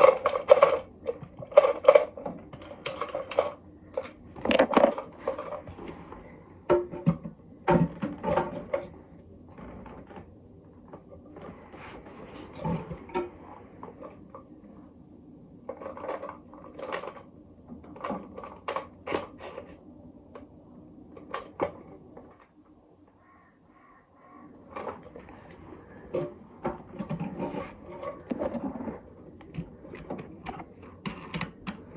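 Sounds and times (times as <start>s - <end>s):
plastic parts clattering: 0.0s - 14.6s, 15.6s - 20.5s, 24.7s - 31.9s
hand tools clicking and knocking: 26.1s - 31.9s.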